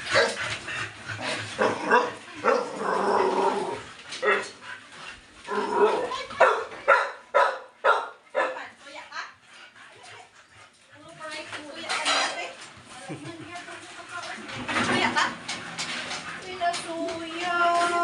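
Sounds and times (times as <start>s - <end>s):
dog barking: 1.6s - 2.7s, 5.9s - 8.7s.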